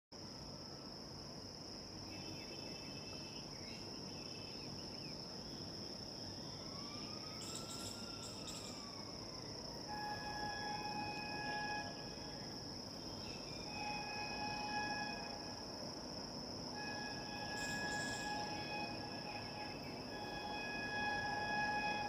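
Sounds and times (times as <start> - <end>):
crickets chirring: 0.2 - 22.0
distant train horn: 9.8 - 22.0.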